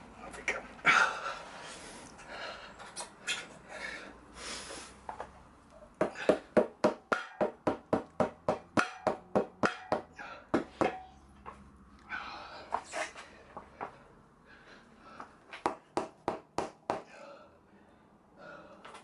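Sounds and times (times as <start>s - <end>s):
rapid sharp knocks: 6.0s - 11.0s.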